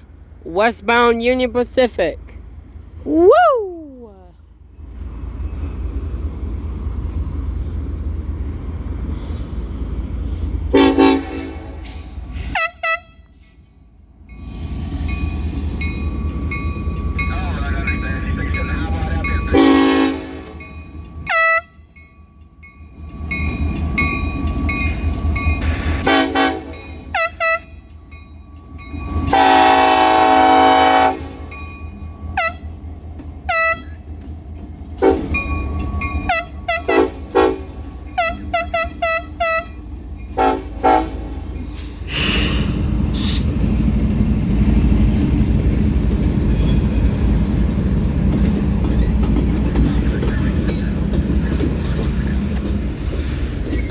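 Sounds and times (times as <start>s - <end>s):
diesel locomotive rumbling: 0.0s - 53.9s
freight train passing: 0.0s - 53.9s
locomotive air horn blasts: 10.7s - 13.3s, 19.5s - 20.7s, 21.3s - 21.8s, 26.0s - 27.8s, 29.3s - 31.6s, 32.4s - 32.7s, 33.5s - 34.0s, 35.0s - 35.4s, 36.2s - 39.8s, 40.4s - 41.5s.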